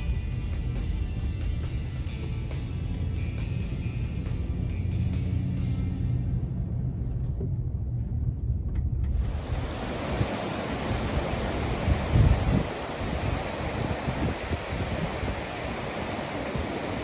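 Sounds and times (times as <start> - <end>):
low rumble: 0.0 - 15.4
wind blowing across microphone: 6.4 - 17.0.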